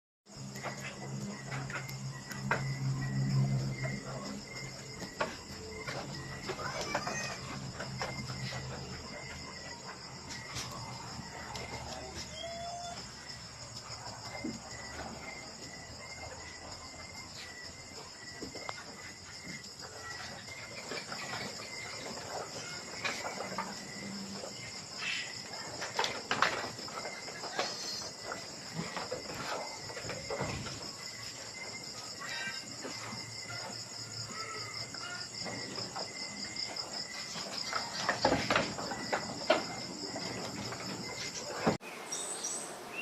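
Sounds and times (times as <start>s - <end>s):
insects trilling: 0.3s - 43.0s
knocks and rustles: 16.8s - 34.3s, 34.9s - 41.8s.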